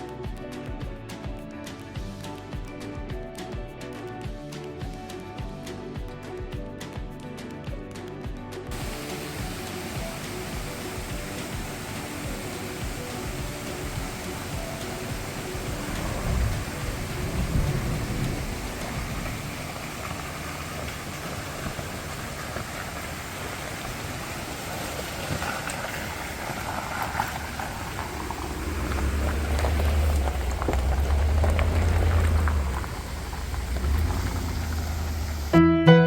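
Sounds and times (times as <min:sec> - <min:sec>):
engine rumble: 0:08.7 - 0:35.6
tyres crunching on gravel: 0:08.7 - 0:35.6.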